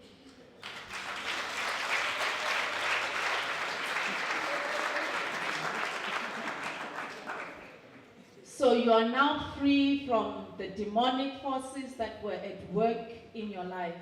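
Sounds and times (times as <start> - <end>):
congregation clapping: 0.6 - 8.1.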